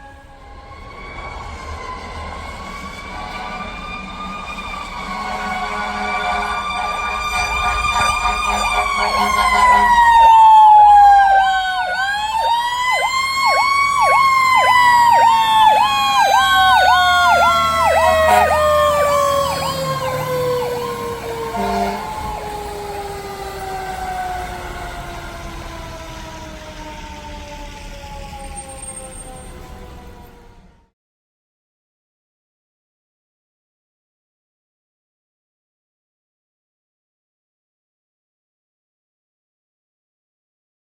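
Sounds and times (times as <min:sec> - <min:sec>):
siren wailing: 0:00.0 - 0:30.9
siren yelp: 0:00.0 - 0:30.9.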